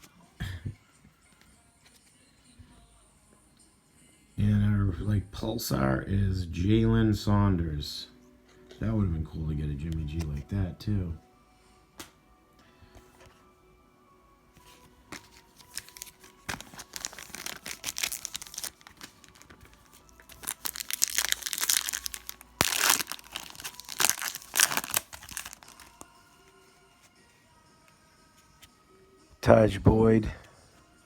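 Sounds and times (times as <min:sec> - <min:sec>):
foil wrapper tearing and crinkling: 0:15.2 - 0:26.1.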